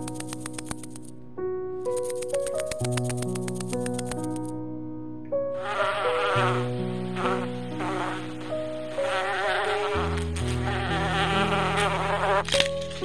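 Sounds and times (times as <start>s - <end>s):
insect buzzing: 5.5s - 13.0s.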